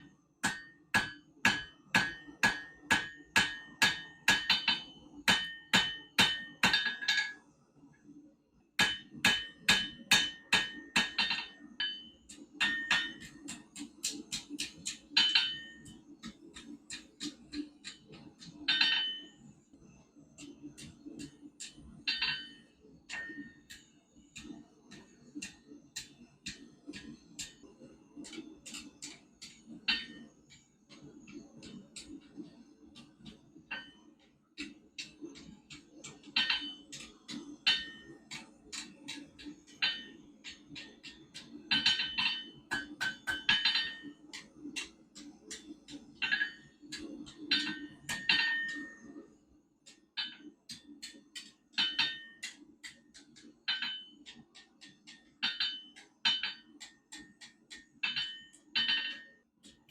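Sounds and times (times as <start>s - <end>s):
hammer striking iron on anvil: 0.4s - 7.4s, 8.8s - 19.4s, 20.4s - 32.4s, 33.0s - 34.0s, 34.6s - 49.2s, 49.9s - 59.9s.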